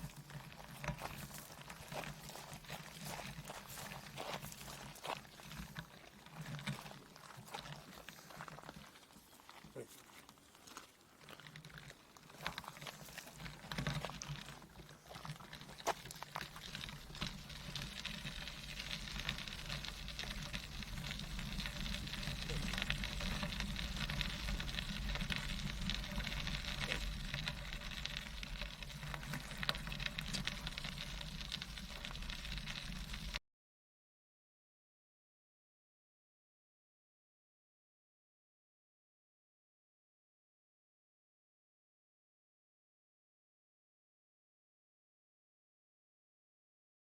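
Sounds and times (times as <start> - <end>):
bicycle tyres rolling on path: 0.0 - 33.4
small clicks and rattles: 0.0 - 33.4.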